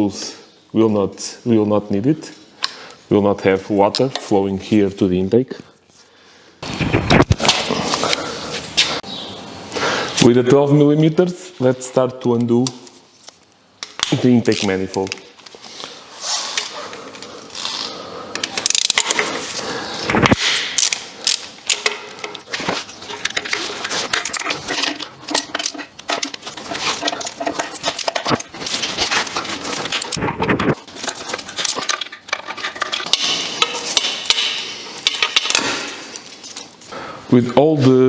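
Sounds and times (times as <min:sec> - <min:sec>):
wrench clicking on metal nuts: 0:31.0 - 0:35.8.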